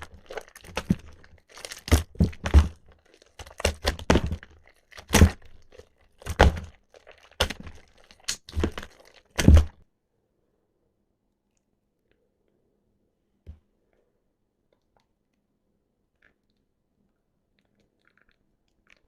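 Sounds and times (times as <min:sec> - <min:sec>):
wet soap squishing: 0:00.0 - 0:09.8, 0:14.6 - 0:19.0.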